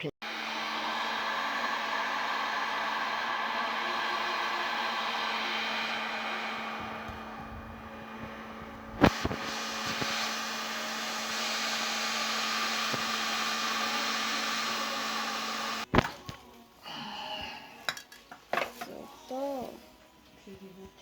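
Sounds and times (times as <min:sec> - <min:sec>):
heat gun blowing air: 0:00.2 - 0:16.0.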